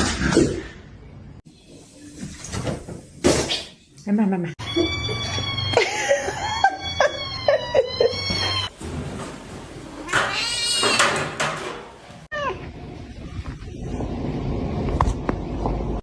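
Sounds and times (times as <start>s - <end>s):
cats meowing: 4.6s - 5.8s, 6.6s - 8.7s, 10.0s - 11.2s.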